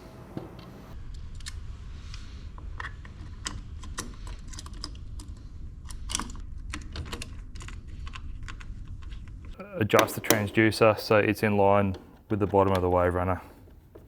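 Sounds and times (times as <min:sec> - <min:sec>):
bracket clicks and taps: 0:09.9 - 0:10.6.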